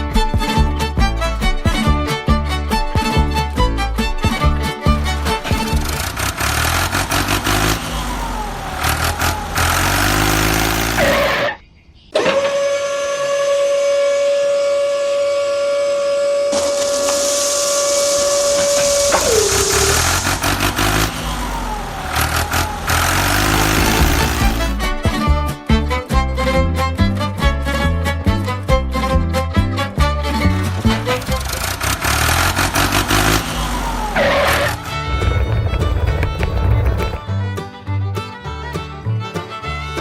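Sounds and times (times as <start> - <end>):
truck engine revving: 2.5 - 11.6, 14.3 - 25.6, 27.8 - 37.6
horn-like tone sliding down: 12.2 - 24.8, 30.8 - 37.1.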